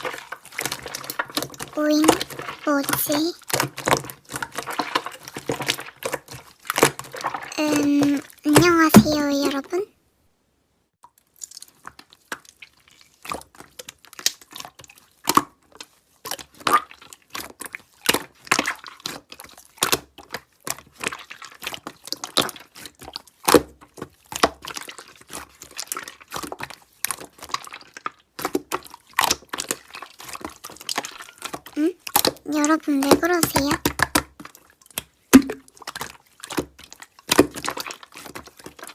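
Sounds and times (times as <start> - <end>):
slime squishing wet clicks: 13.2 - 15.5, 16.3 - 38.9.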